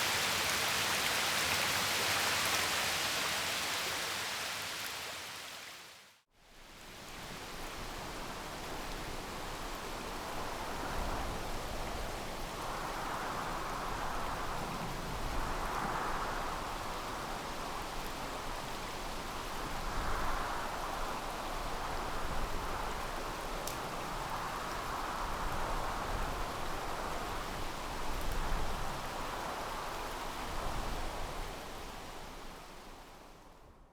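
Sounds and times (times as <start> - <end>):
rushing water: 0.0 - 6.2.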